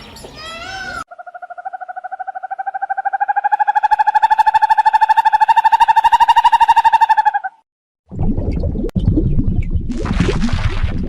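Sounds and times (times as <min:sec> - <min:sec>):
gliding animal calls: 0:00.6 - 0:07.6
long animal trill: 0:01.0 - 0:07.5.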